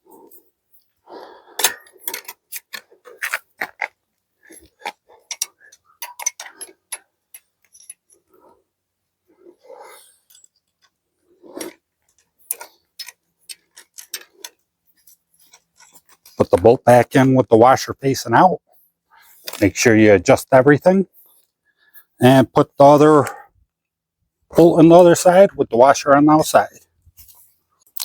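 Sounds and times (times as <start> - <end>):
metallic clicks of wrench and bolts: 1.6 - 3.8, 4.6 - 8.3, 12.5 - 14.6.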